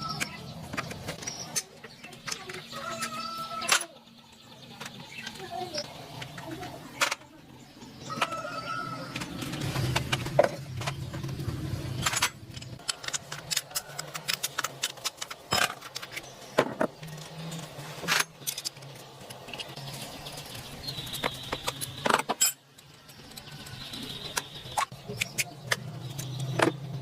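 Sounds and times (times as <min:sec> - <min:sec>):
metal tools clinking and knocking: 0:11.9 - 0:19.7, 0:21.6 - 0:26.7.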